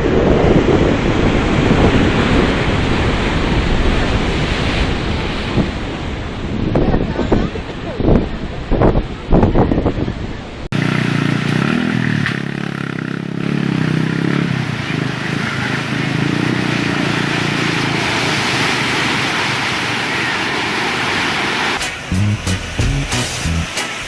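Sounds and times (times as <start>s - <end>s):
loud rushing noise: 16.8s - 24.0s.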